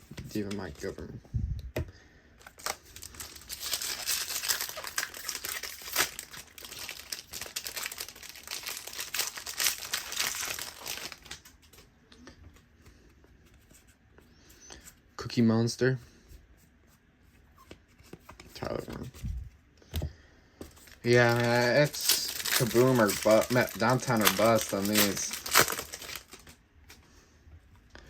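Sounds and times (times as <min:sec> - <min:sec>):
cards rustling and ticking: 0:00.0 - 0:01.2, 0:02.4 - 0:14.9, 0:20.0 - 0:27.1
plastic wrapper crinkling: 0:02.4 - 0:11.8, 0:20.7 - 0:26.6.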